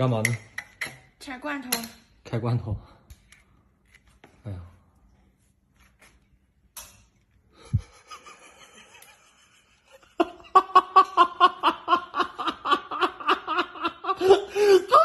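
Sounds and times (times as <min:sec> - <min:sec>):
person laughing hard: 0:07.6 - 0:15.0.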